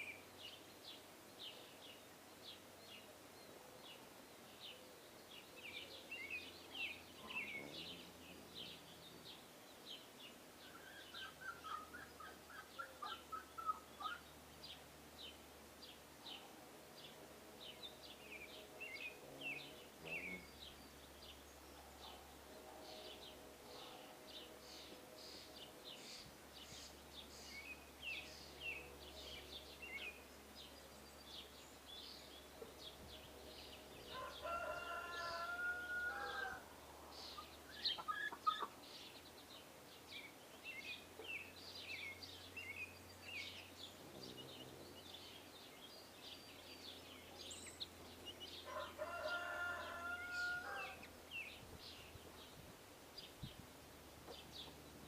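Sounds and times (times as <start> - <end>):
songbirds chirping: 0.0 - 55.0
rooster crowing: 34.1 - 36.6, 48.6 - 51.1.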